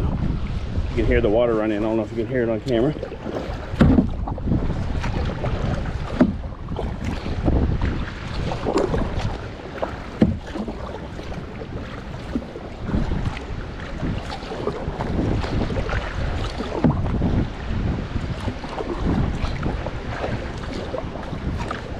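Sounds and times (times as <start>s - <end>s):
paddle strokes splashing in water: 0.0s - 21.9s
wind buffeting microphone: 0.0s - 21.9s.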